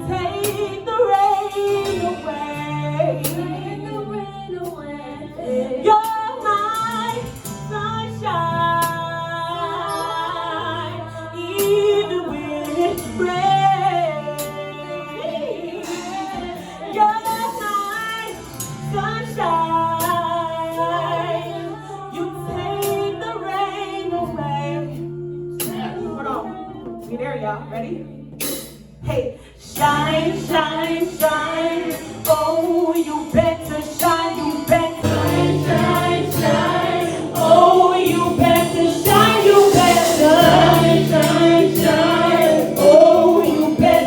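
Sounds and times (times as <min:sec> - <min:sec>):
woman singing slow song: 0:00.0 - 0:44.0
backing track low notes: 0:35.0 - 0:44.0.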